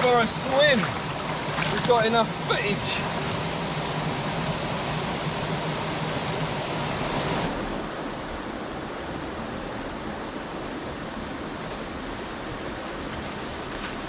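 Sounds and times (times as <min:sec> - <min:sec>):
waterfall rushing: 0:00.0 - 0:08.8.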